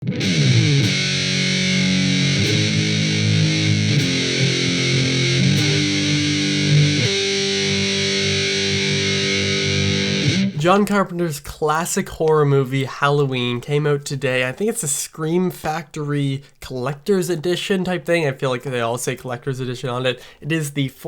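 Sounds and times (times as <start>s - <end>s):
distorted electric guitar chords: 0.0s - 10.6s.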